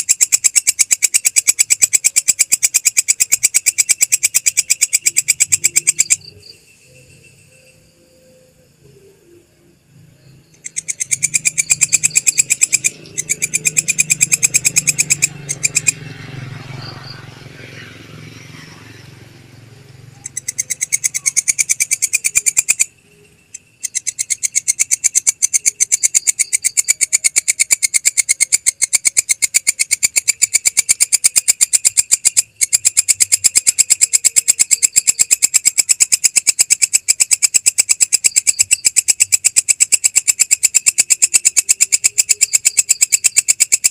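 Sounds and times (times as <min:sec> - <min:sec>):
insect clicking trill: 0:00.0 - 0:08.5, 0:10.2 - 0:43.9
low hum: 0:05.2 - 0:23.9.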